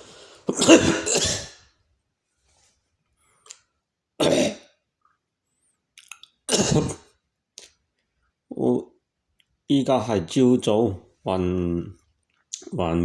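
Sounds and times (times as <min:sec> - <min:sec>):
person coughing: 0:00.5 - 0:01.6, 0:04.2 - 0:04.7, 0:06.5 - 0:07.1.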